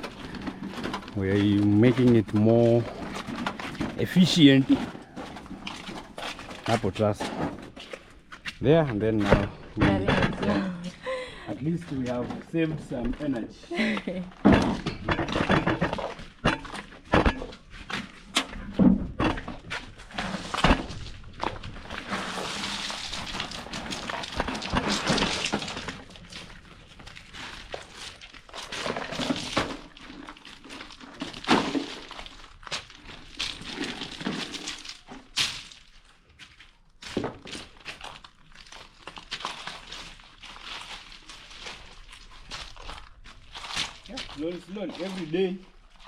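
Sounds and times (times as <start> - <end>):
scraping: 14.3 - 36.1
rustling: 14.3 - 46.0.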